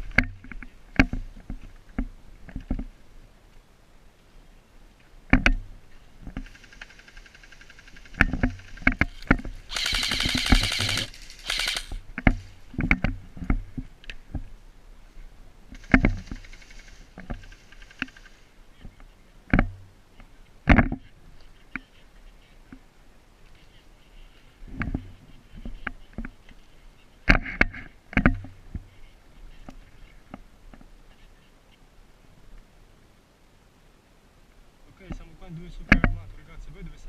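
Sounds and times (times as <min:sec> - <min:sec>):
buzzy hiss: 0:05.8 - 0:12.8, 0:15.0 - 0:18.8
airsoft gun shots: 0:09.7 - 0:12.0.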